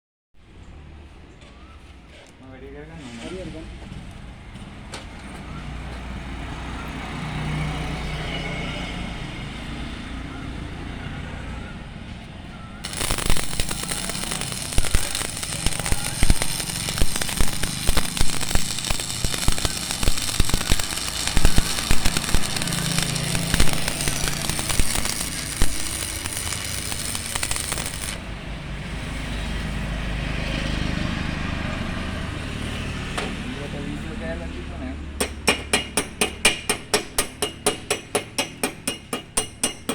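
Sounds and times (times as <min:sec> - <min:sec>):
welding arc crackling: 0:12.8 - 0:28.4.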